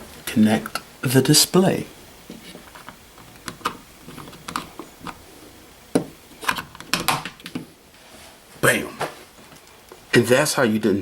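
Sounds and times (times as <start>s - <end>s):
plastic clicks and rubbing: 2.3s - 5.2s.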